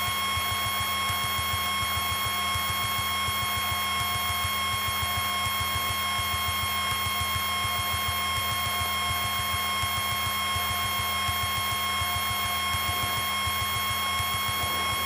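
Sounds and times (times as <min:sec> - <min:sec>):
high electrical whine: 0:10.9 - 0:15.0
aircraft engine pulsing: 0:14.3 - 0:15.0.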